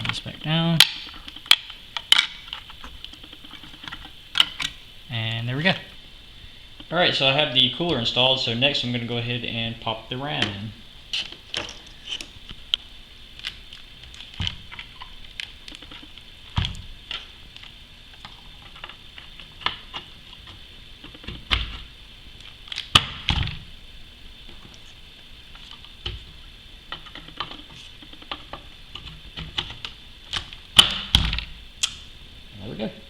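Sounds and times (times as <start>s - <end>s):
loud plastic snaps: 26.9s - 32.1s.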